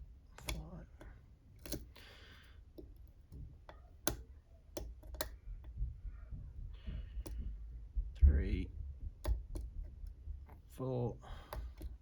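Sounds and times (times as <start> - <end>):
lock pick clicking on pins: 0.3 - 5.8, 9.2 - 10.2, 11.4 - 12.0
pick scraping in lock: 1.6 - 2.1.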